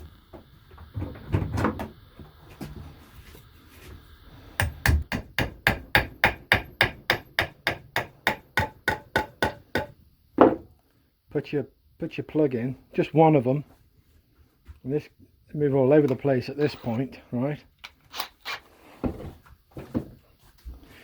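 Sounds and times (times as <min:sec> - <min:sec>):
hammer striking wall plug: 0:04.6 - 0:10.0.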